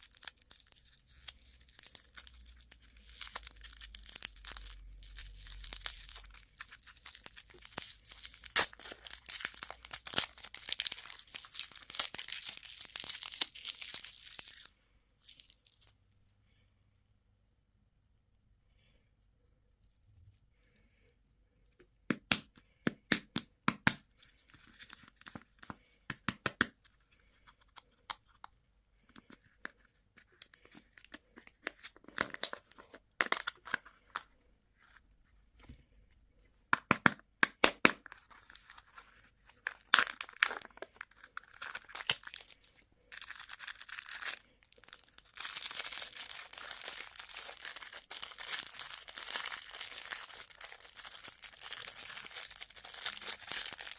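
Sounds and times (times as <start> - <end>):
plastic packaging crinkling: 0.0 - 16.0, 29.2 - 34.3, 37.7 - 53.9.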